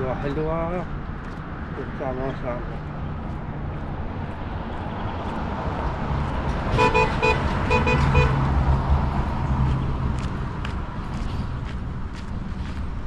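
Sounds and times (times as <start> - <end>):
vehicle horn beeps: 6.8 - 8.4.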